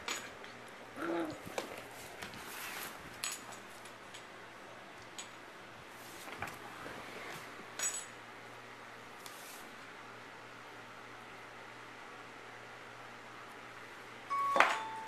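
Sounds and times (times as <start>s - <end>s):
soft rustling: 1.3s - 3.8s, 5.9s - 7.6s.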